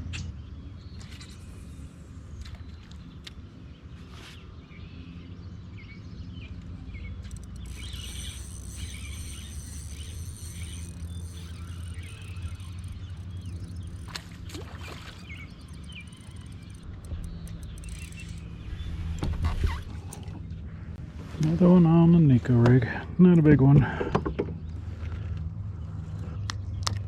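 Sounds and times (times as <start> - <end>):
small birds chirping: 0.1 - 20.8
steady low rumble: 4.6 - 23.6.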